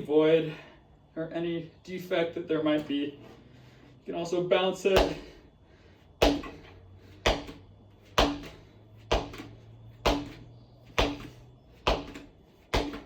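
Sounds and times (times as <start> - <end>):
bike wheel bouncing on floor: 6.2 - 13.0.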